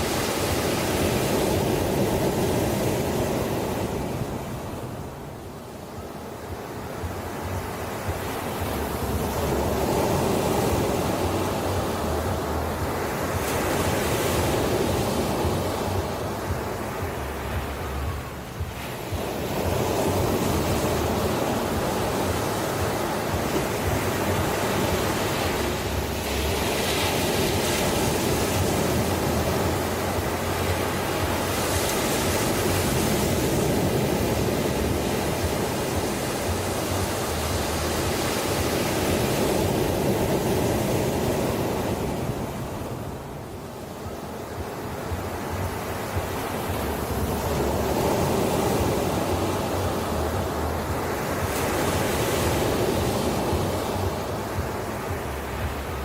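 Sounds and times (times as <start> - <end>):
ocean surf washing in: 0.0 - 56.0.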